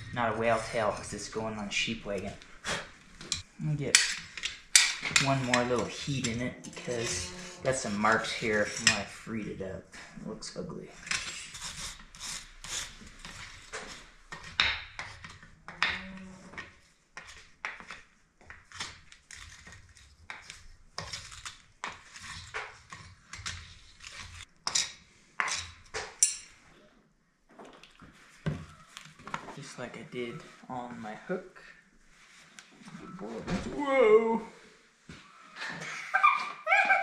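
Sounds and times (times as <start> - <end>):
steel tools tapping on metal: 26.2 - 26.5.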